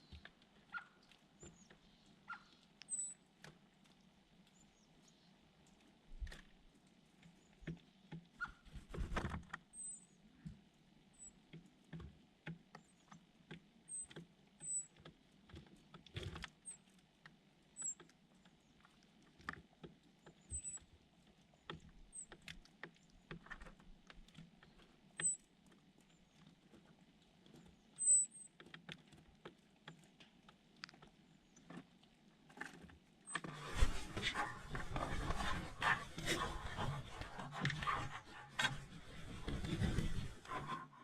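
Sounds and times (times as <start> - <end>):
birds pecking and scrabbling: 0.0 - 41.0
thin high bird chirps: 0.7 - 3.2, 28.0 - 28.5.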